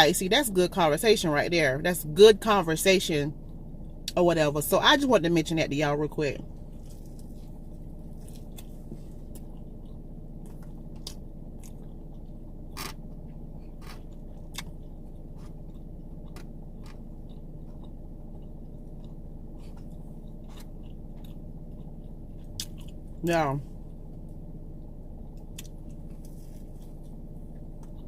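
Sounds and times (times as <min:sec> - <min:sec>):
steady low hum: 0:00.0 - 0:28.0
chewing and biting pizza: 0:06.4 - 0:28.0.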